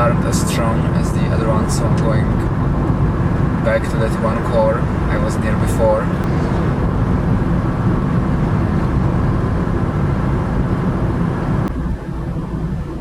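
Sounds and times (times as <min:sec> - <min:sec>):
car engine and tyre noise: 0:00.0 - 0:13.0.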